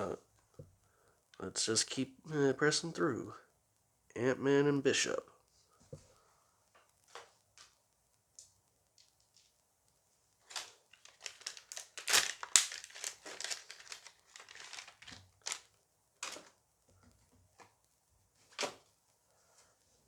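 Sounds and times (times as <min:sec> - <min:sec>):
foil pack crinkling: 0:10.4 - 0:16.6.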